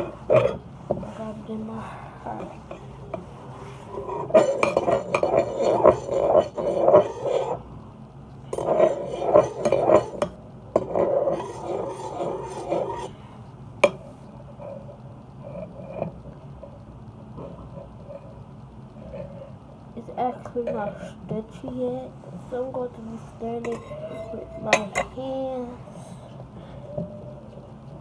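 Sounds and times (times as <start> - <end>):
utensil scraping and clinking bowl: 0.0 - 1.6, 2.2 - 7.6, 8.5 - 13.2, 13.8 - 16.2, 22.6 - 25.3.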